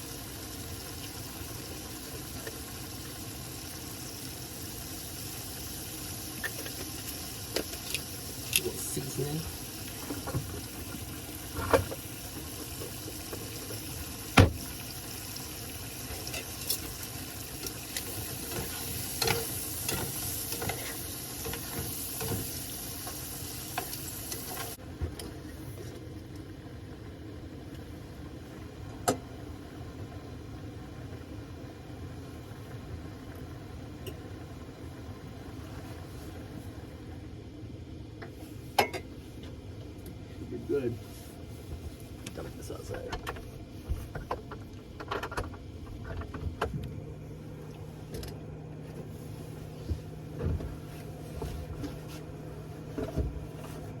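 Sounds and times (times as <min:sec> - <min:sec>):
food sizzling in a pan: 0:00.0 - 0:24.8.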